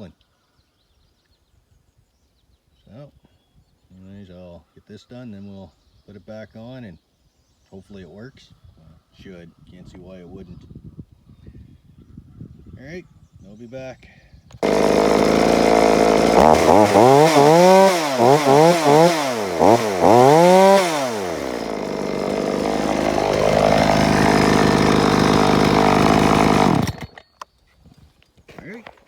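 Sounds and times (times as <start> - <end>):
chainsaw revving: 14.6 - 27.2.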